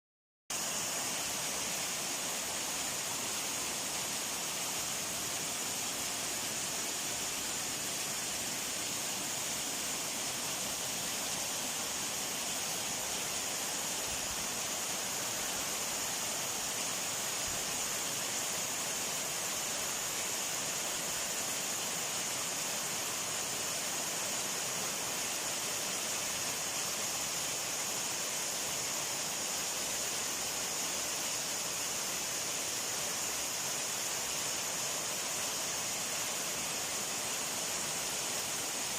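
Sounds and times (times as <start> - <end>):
waterfall rushing: 0.5 - 38.9.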